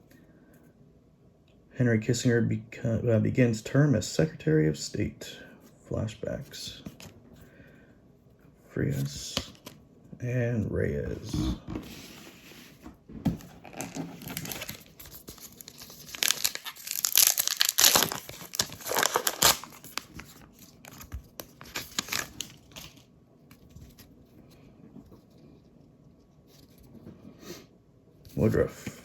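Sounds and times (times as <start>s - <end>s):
card pack wrapper tearing: 13.4s - 23.0s.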